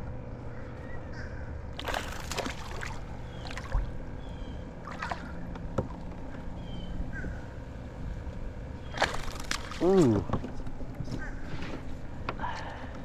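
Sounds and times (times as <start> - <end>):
splashy rustles: 1.8 - 3.9, 8.9 - 10.3.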